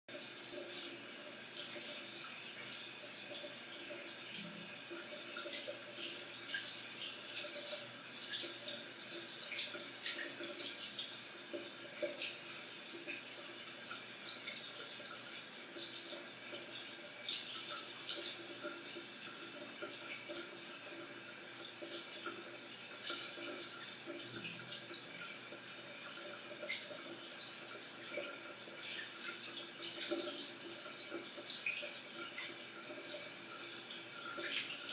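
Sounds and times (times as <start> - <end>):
shower water spraying: 0.1 - 34.9
water splashes and drips: 0.1 - 34.9.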